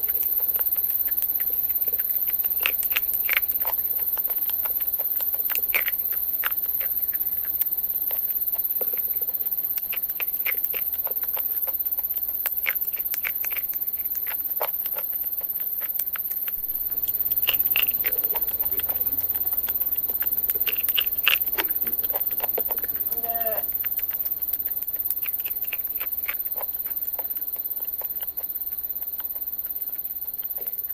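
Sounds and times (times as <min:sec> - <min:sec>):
crunchy chicken chewing: 0:00.0 - 0:30.9.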